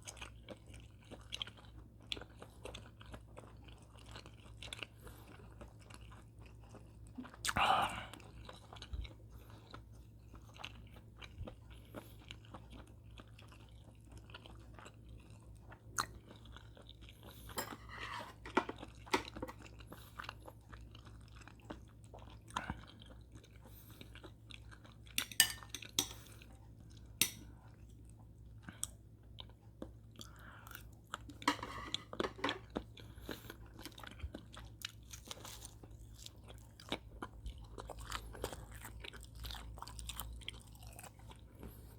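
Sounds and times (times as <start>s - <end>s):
person chewing and crunching food: 0.0s - 41.9s.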